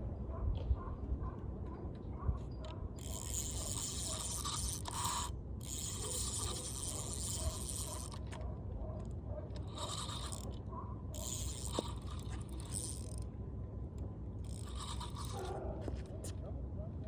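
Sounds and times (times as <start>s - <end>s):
fishing reel gears clicking: 3.0s - 8.4s, 9.6s - 13.3s, 14.4s - 15.6s.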